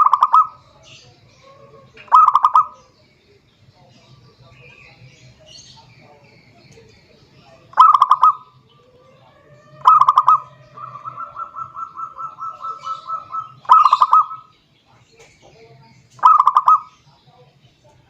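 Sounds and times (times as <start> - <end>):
dove cooing in staccato bursts: 0.0 - 3.0, 7.6 - 14.5, 16.2 - 17.1
soft dove coos: 7.8 - 14.5.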